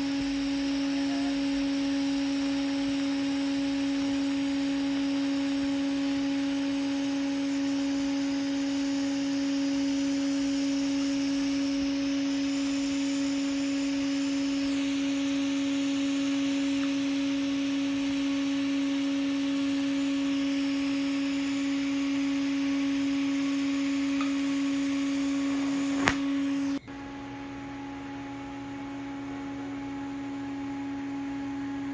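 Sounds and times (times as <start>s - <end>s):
welding arc hissing: 0.0s - 26.8s.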